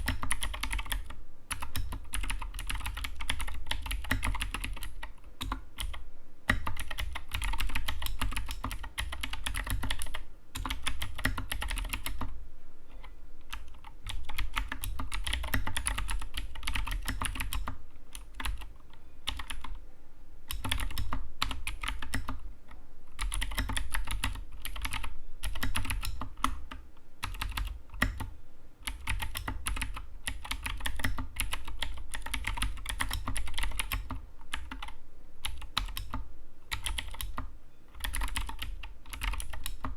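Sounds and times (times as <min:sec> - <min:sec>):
mechanical keyboard typing: 0:00.0 - 0:12.3, 0:13.4 - 0:18.7, 0:19.3 - 0:19.8, 0:20.5 - 0:22.4, 0:23.2 - 0:39.9.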